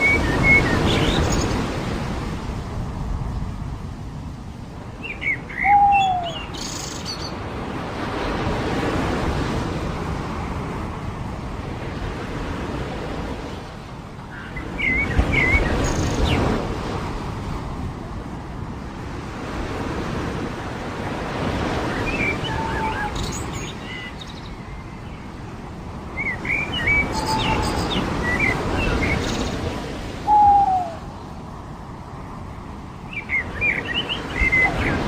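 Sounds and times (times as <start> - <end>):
surf washing ashore: 0.0 - 35.0
slurred bird call: 26.9 - 28.5, 30.2 - 31.1.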